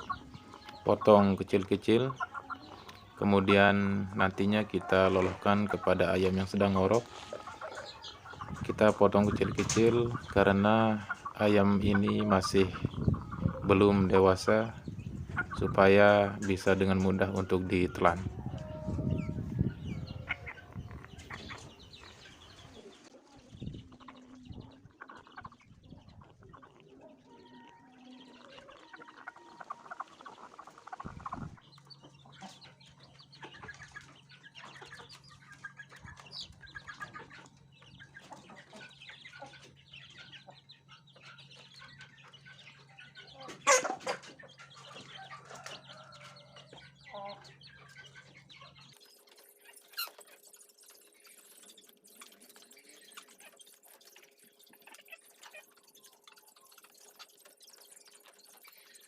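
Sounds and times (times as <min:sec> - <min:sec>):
chickens clucking: 0:00.0 - 0:59.0.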